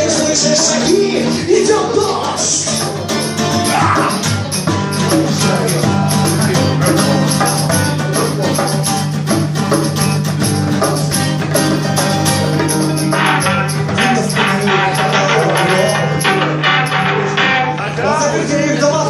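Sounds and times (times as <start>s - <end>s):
bass: 0.0s - 19.0s
guitar: 0.0s - 19.0s
percussion with shaker: 2.6s - 17.6s.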